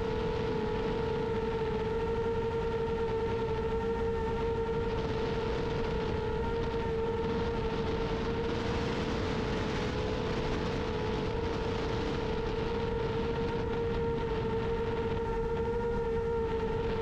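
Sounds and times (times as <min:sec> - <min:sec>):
wind rushing over microphone: 0:00.0 - 0:17.0.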